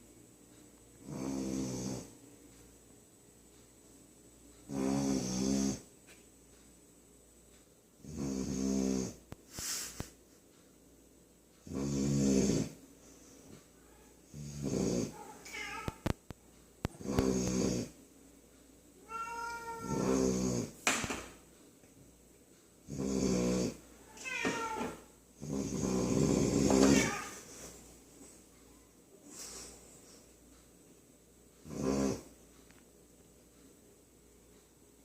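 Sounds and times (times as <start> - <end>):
puppy snoring: 1.0 - 2.2, 4.7 - 5.9, 8.0 - 9.2, 11.6 - 12.8, 14.3 - 15.3, 16.8 - 18.0, 19.8 - 20.8, 22.8 - 23.8, 25.4 - 27.2, 31.6 - 32.3.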